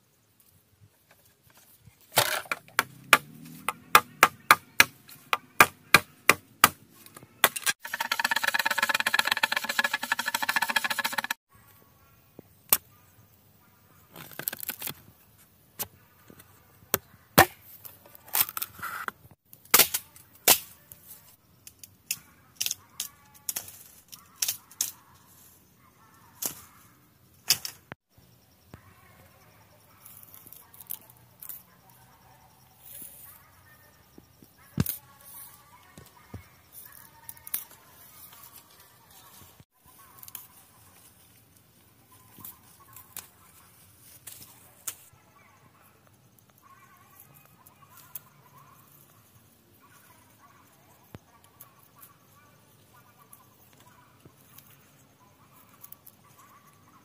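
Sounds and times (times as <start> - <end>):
continuous rasping: 1.0 - 11.5
sharp chopping blows on bamboo: 2.2 - 8.1, 17.4 - 17.6, 19.7 - 20.7.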